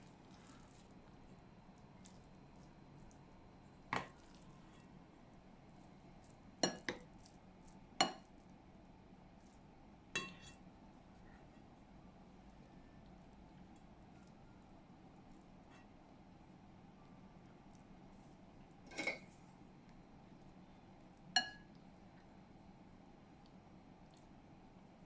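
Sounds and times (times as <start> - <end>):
dishes and utensils clinking: 10.2 - 10.6, 18.9 - 19.3.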